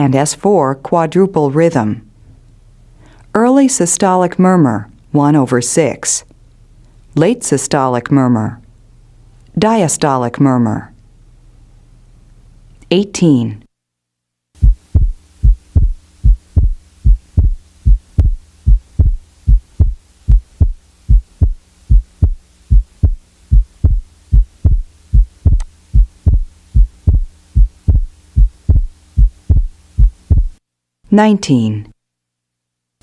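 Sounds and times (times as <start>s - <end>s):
faint steady hum: 0.0s - 33.0s
heartbeat thumps through stethoscope: 14.6s - 30.6s.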